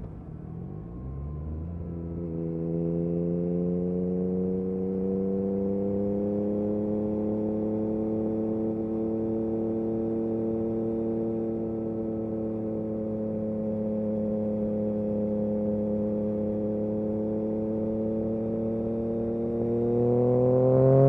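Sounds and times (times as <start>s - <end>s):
motorcycle engine revving up: 19.1s - 21.0s.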